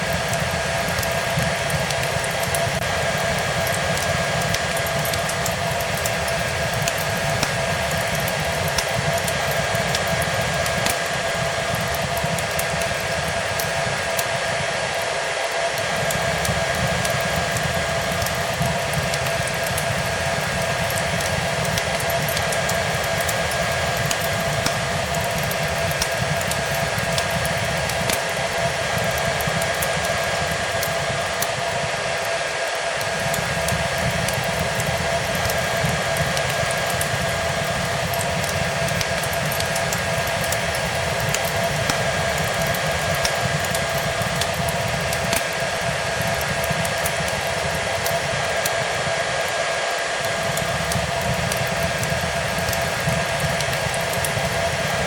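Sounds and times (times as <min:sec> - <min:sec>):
fireplace crackling and popping: 0:00.0 - 0:55.0
hair dryer running: 0:00.0 - 0:55.0.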